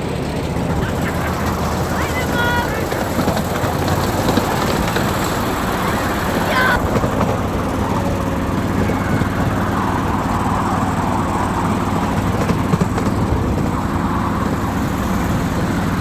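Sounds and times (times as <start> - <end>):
miniature train engine drone: 0.0 - 16.0
rapid train clatter: 0.0 - 16.0.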